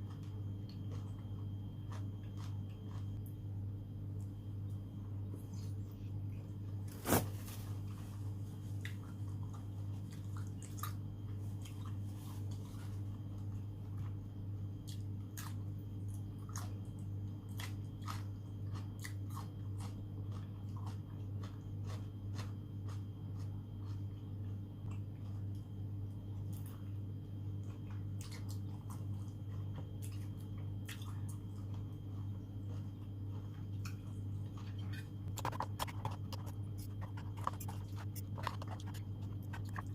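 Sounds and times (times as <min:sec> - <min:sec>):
steady low hum: 0:00.0 - 0:39.9
wet chewing and mouth smacks: 0:00.1 - 0:03.3, 0:08.8 - 0:12.0, 0:26.4 - 0:39.9.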